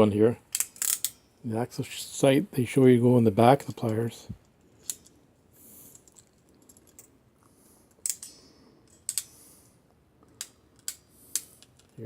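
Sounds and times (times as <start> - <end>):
crimping pliers ratchet clicks: 0.5 - 1.2.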